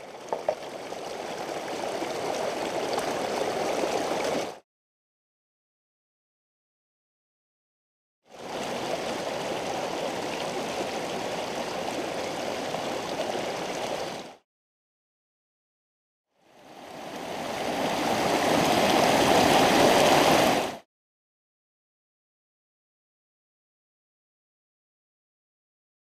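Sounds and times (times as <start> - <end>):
stream water rushing: 0.0 - 4.6, 8.3 - 14.4, 16.5 - 20.8.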